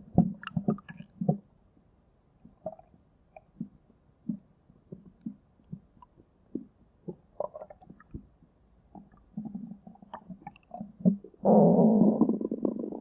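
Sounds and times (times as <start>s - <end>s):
stomach growling: 2.5s - 8.3s, 8.9s - 13.0s.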